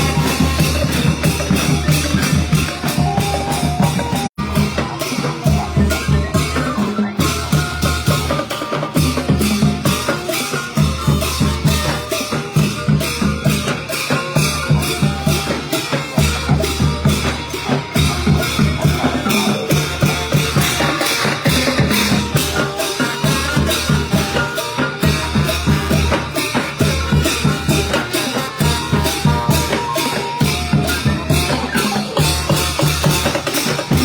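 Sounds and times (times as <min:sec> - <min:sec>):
brass band playing: 0:00.0 - 0:05.0, 0:15.8 - 0:34.0
drums and percussion beat: 0:00.0 - 0:34.0.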